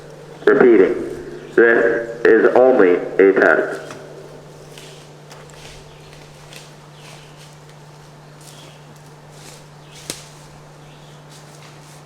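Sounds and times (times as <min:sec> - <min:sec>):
faint low hum: 0:00.0 - 0:12.0
soft scuffs: 0:03.7 - 0:12.0.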